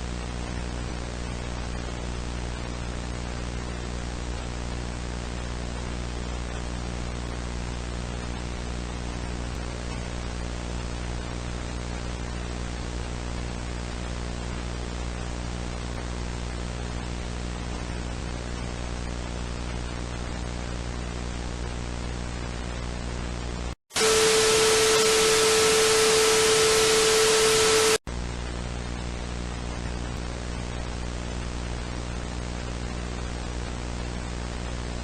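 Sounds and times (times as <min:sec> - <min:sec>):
loud static burst with tone: 0:20.3 - 0:35.0
static hiss: 0:23.9 - 0:28.0
low hum: 0:24.0 - 0:28.0.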